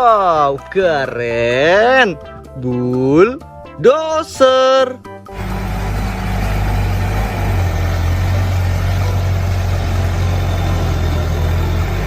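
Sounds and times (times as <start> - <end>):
heavy engine idling: 5.3 - 12.0.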